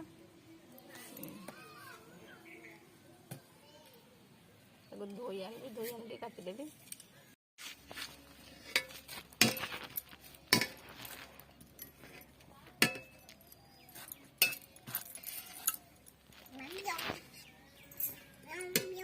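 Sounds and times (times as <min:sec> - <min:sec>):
soft scraping and rustling: 0:05.6 - 0:18.4.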